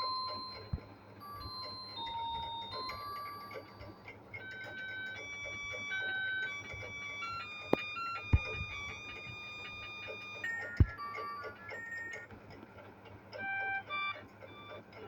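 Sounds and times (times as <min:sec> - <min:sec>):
electronic ringtone melody: 0:00.0 - 0:12.3, 0:13.4 - 0:14.8.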